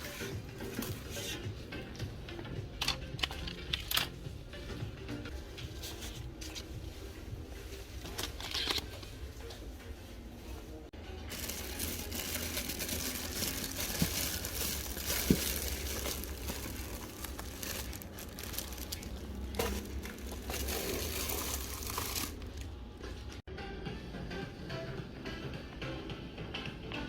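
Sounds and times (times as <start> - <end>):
crinkling and rustling: 5.3 - 23.4.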